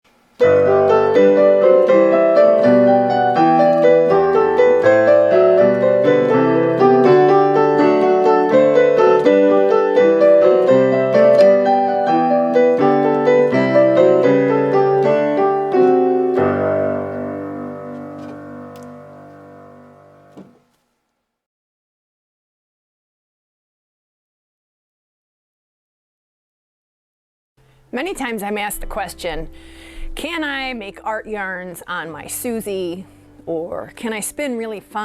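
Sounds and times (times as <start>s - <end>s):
solo piano music: 0.4s - 20.7s, 27.6s - 35.0s.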